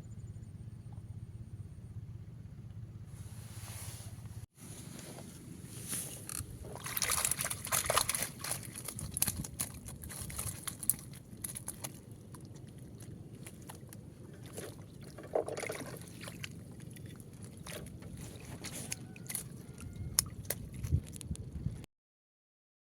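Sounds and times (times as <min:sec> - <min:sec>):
low steady rumble: 0:00.0 - 0:21.9
water sloshing: 0:04.7 - 0:21.7.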